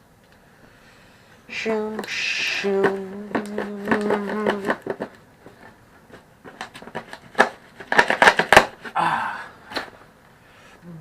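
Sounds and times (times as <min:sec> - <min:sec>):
packaging rustling and clicking: 0:02.0 - 0:09.0
man humming sound effect: 0:08.9 - 0:09.6, 0:10.8 - 0:11.0.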